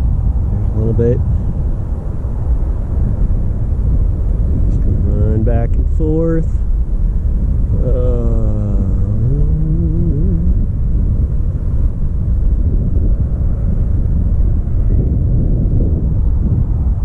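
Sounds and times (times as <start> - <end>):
wind buffeting microphone: 0.0 - 17.0
pitched whine sweeping down: 7.8 - 11.3.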